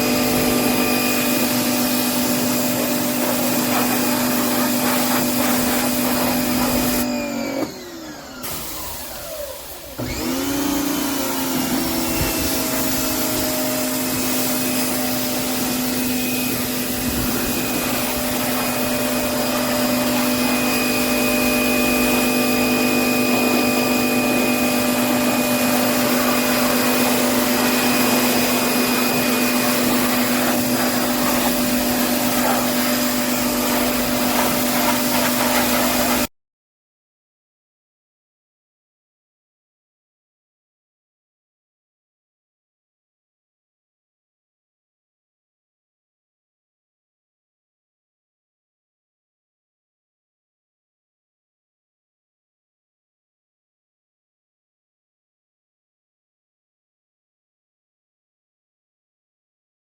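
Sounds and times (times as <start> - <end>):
pressure washer motor humming: 0.0 - 36.3
water spray hissing: 0.2 - 7.0, 13.6 - 22.4, 23.0 - 36.3.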